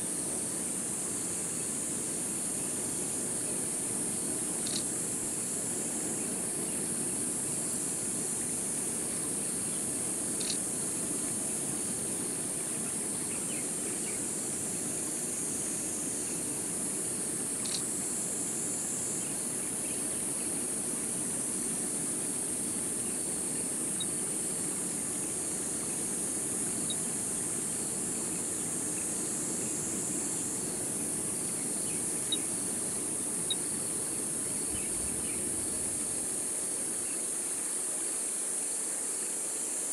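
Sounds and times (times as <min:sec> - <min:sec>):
insect chorus: 0:00.0 - 0:39.9
faint chirps: 0:26.8 - 0:27.7.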